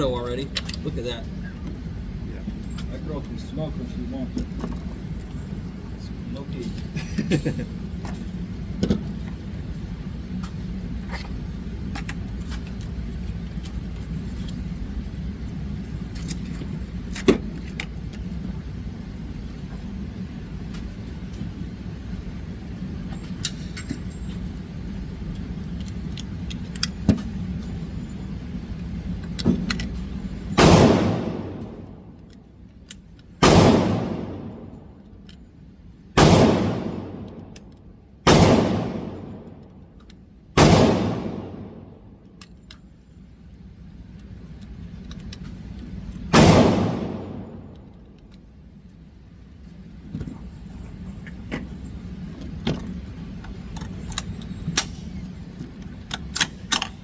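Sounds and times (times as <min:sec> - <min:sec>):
low hum: 0:00.0 - 0:57.0
gunshots with echoing decay: 0:30.6 - 0:32.0, 0:33.4 - 0:34.8, 0:36.2 - 0:37.6, 0:38.3 - 0:39.6, 0:40.6 - 0:42.1, 0:46.3 - 0:47.7.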